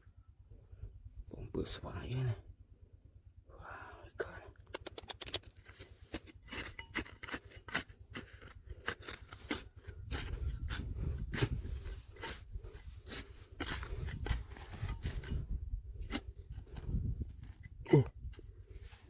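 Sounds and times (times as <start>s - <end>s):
low rumble: 0.0s - 4.7s, 8.1s - 19.0s
digging tool scraping gravel: 5.4s - 19.0s.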